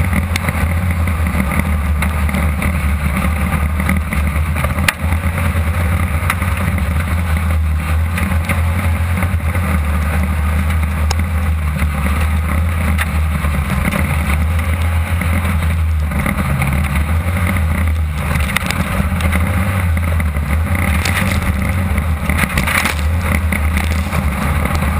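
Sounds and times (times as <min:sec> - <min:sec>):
buggy engine droning: 0:00.0 - 0:24.9
rattles and knocks: 0:16.2 - 0:24.9.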